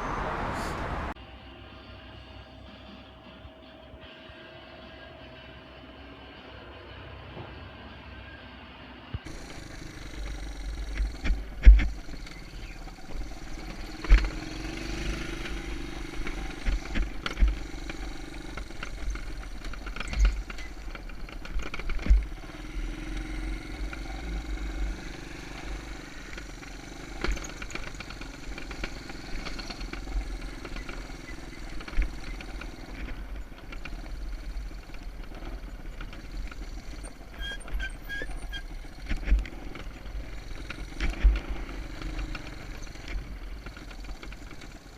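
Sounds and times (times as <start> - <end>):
small engine running: 9.2 - 44.9.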